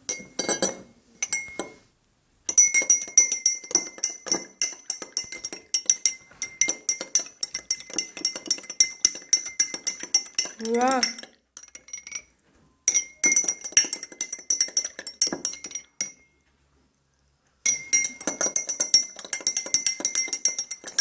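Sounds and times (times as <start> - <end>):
spoon clinking in glass: 0.0 - 1.8, 2.5 - 16.4, 17.7 - 21.0.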